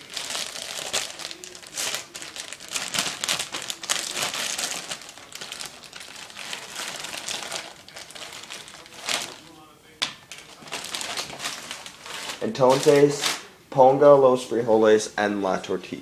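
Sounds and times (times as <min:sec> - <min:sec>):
crinkly packaging rustling: 0:00.0 - 0:13.5.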